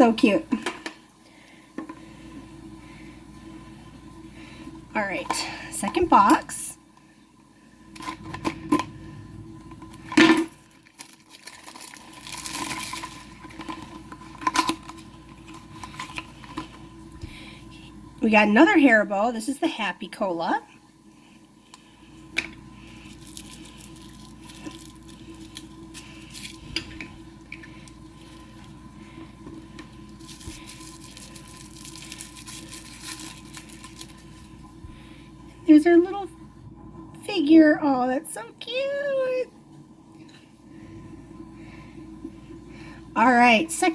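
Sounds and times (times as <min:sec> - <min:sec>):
packaging rustling: 0:10.0 - 0:16.8, 0:22.8 - 0:27.0, 0:29.5 - 0:34.7.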